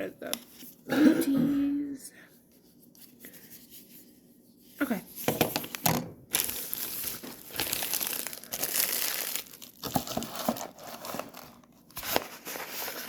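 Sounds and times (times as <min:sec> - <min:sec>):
packaging crinkling: 0:05.6 - 0:13.0.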